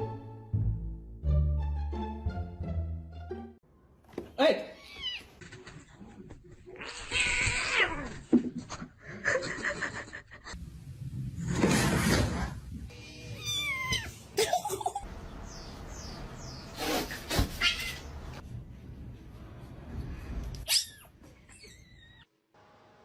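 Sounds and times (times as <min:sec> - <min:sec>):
cats meowing: 0:04.8 - 0:05.7, 0:06.7 - 0:08.2, 0:12.9 - 0:14.3, 0:17.5 - 0:18.1.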